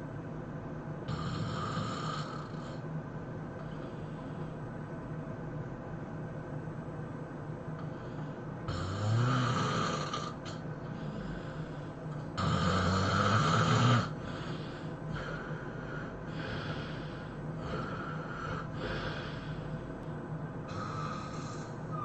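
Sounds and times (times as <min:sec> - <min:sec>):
person snoring heavily: 0:01.1 - 0:02.8, 0:08.0 - 0:19.9, 0:20.7 - 0:22.0.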